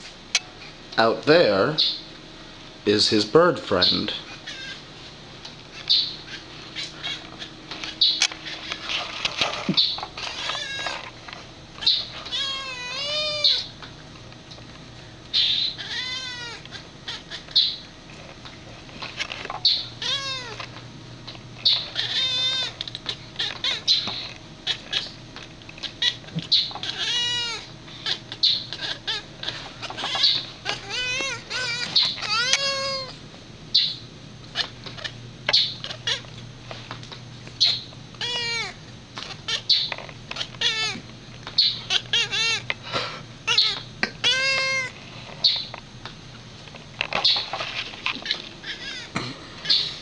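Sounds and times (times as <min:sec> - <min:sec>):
cat chirping and trilling: 0:03.8 - 0:04.8, 0:05.7 - 0:09.0, 0:09.7 - 0:11.1, 0:11.8 - 0:13.8, 0:15.3 - 0:17.9, 0:19.1 - 0:20.7, 0:21.6 - 0:25.2, 0:25.8 - 0:36.4, 0:37.6 - 0:41.0, 0:41.6 - 0:42.7, 0:43.4 - 0:45.7, 0:48.1 - 0:50.0.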